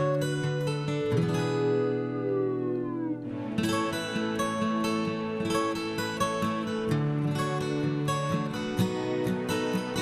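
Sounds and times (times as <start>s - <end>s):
guitar chord ringing: 0.0s - 6.6s.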